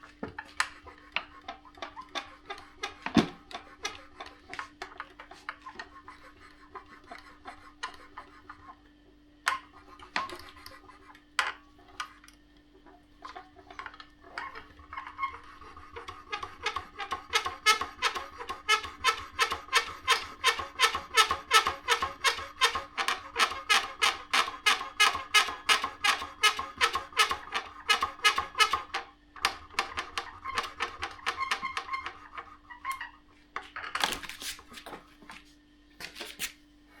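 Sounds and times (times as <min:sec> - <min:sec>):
creaking squeaks: 0:14.3 - 0:15.7.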